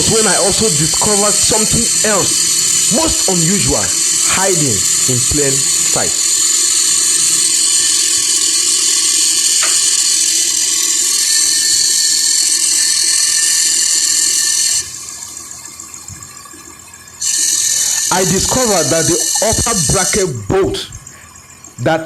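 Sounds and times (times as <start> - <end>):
car engine running: 0.0 - 13.0, 17.3 - 21.2
high-pitched metal grinding: 0.0 - 22.0.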